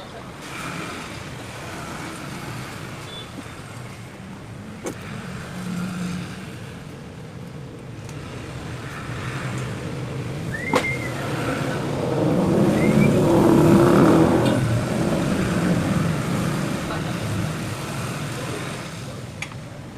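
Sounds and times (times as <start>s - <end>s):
vehicle engine approaching: 4.4s - 19.4s.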